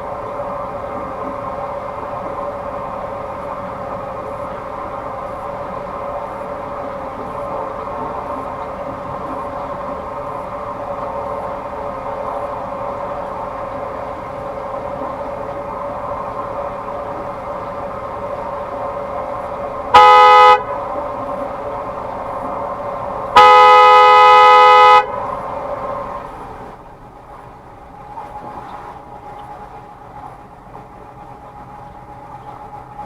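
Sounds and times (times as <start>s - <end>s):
boat horn blasts: 0.0s - 26.4s
steady drone: 0.0s - 29.0s.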